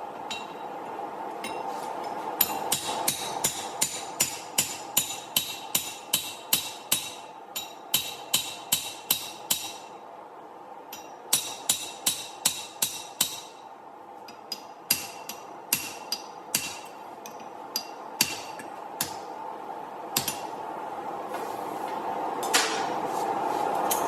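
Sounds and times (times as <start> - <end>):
hammer striking steel on anvil: 0.3 - 0.6, 2.4 - 9.9, 10.9 - 13.6, 14.3 - 19.3, 20.2 - 20.6.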